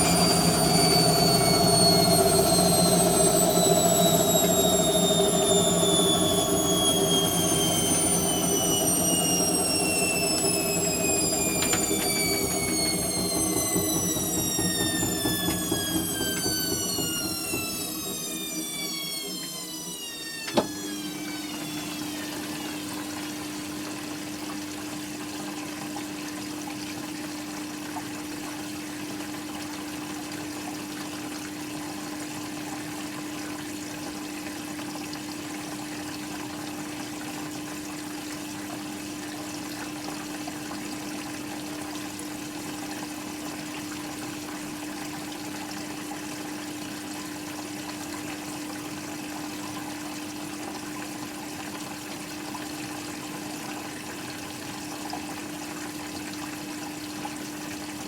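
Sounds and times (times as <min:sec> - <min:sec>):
click: 0:00.0 - 0:20.8
electric hum: 0:00.0 - 0:22.9
water running through washing machine: 0:00.0 - 0:23.4.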